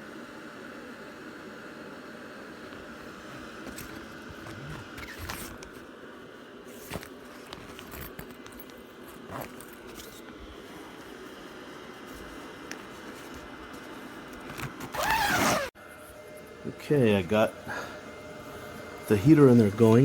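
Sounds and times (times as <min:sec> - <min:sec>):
heater fan whirring: 0:00.0 - 0:20.0
handling clicks and rustles: 0:02.7 - 0:05.9, 0:06.6 - 0:15.7.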